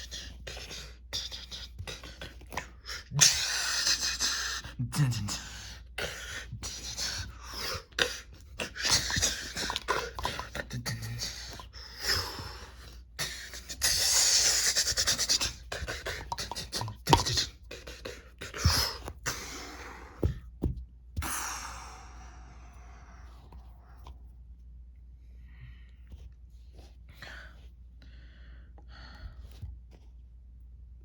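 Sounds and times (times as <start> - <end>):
breathy hissing mouth sounds: 0.0 - 20.1.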